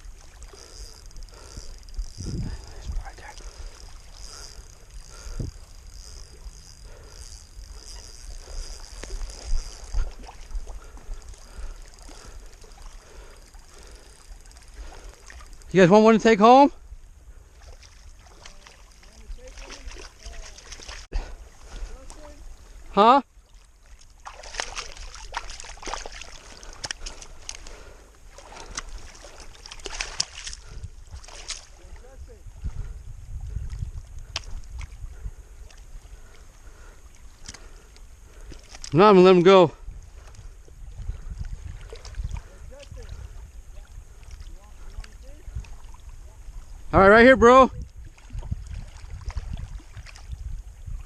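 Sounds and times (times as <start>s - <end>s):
low steady rumble: 0.0s - 16.1s
wind buffeting microphone: 0.0s - 23.0s, 24.6s - 38.6s, 39.7s - 51.0s
water lapping at shoreline: 0.0s - 51.0s.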